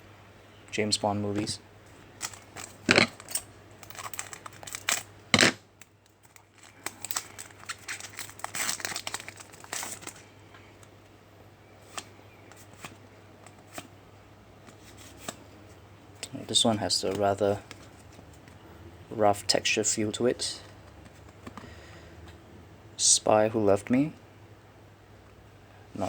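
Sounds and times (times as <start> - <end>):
wrapper crinkling and tearing: 2.2 - 5.1, 5.8 - 10.3.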